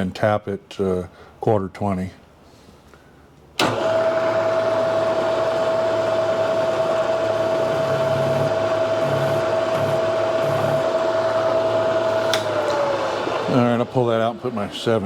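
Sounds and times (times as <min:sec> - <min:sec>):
drill spotting steel: 0:03.6 - 0:14.3
milling machine spindle whine: 0:03.6 - 0:15.0.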